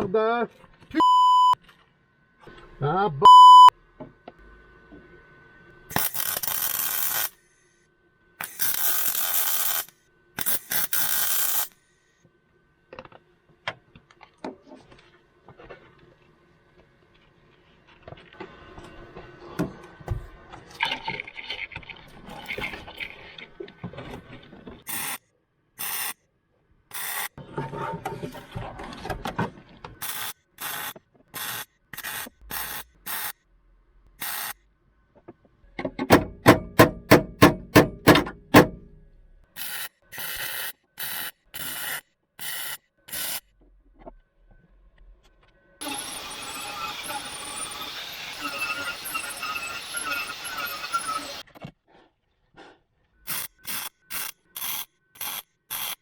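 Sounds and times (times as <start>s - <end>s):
welder welding sheet steel: 5.9s - 7.8s, 8.4s - 11.8s, 24.9s - 25.2s, 25.8s - 26.2s, 26.9s - 27.4s, 30.0s - 33.4s, 34.2s - 34.6s, 39.6s - 43.5s, 45.8s - 51.5s, 53.3s - 56.0s
clicks and scraping: 8.4s - 11.7s.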